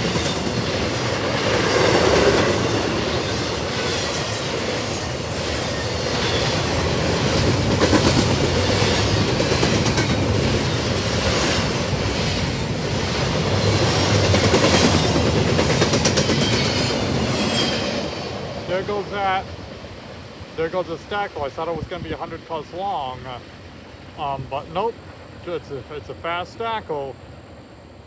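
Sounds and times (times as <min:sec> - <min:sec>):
wheel clacks on rail: 0:00.0 - 0:18.0
freight train wheels rumbling: 0:00.0 - 0:28.0.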